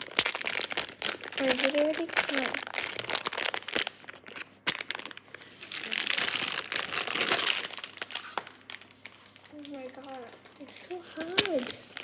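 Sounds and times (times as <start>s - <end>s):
packaging snapping: 0.0s - 10.4s, 11.1s - 12.0s
packaging crinkling: 0.0s - 12.0s.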